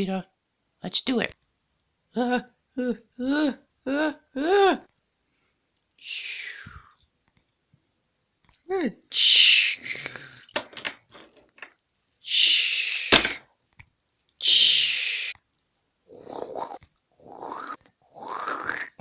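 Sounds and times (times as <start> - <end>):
person making hissing sounds: 6.0 - 7.0, 9.1 - 10.6, 12.2 - 13.4, 14.4 - 15.5, 16.1 - 19.0
sharp thump: 13.1 - 13.4.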